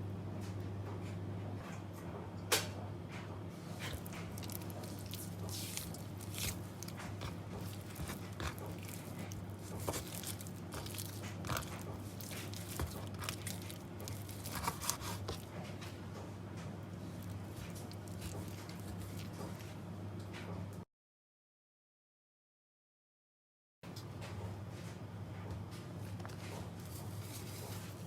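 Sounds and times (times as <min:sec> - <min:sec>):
low electrical hum: 0:00.0 - 0:20.8, 0:23.9 - 0:28.0
raw chicken being cut: 0:03.6 - 0:15.7, 0:17.0 - 0:19.8.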